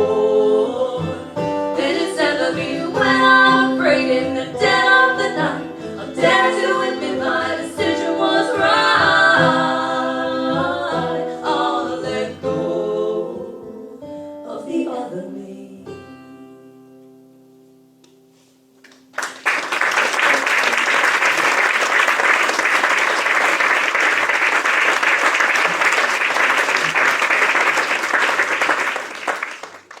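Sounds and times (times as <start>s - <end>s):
voices singing in harmony: 0.0s - 16.0s
guitar: 0.0s - 19.4s
audience applause: 18.8s - 30.0s.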